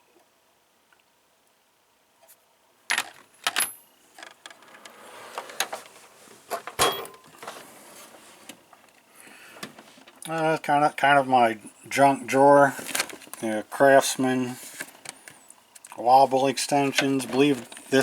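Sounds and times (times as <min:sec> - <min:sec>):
metal drawers rattling: 0:04.5 - 0:08.2
metal tools clinking: 0:06.7 - 0:07.3
sharp metal clanks: 0:06.8 - 0:07.3.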